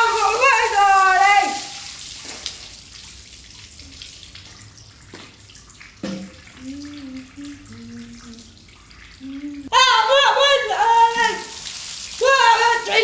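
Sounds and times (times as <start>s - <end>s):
water splashing: 0.0s - 13.0s
woman softly humming: 6.6s - 8.5s, 9.2s - 9.7s.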